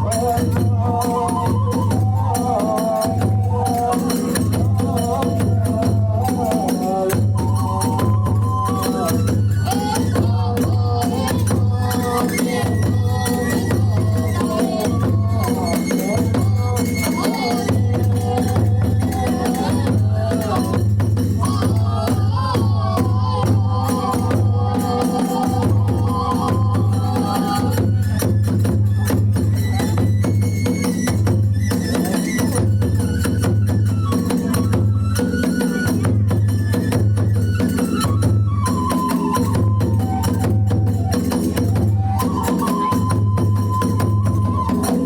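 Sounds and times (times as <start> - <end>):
bamboo flute melody: 0.0 - 45.0.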